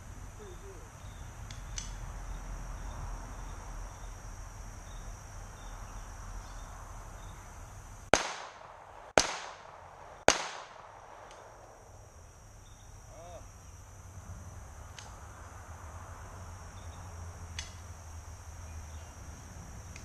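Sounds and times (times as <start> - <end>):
insects chirring: 0.0 - 20.0
pistol shots: 8.1 - 11.9.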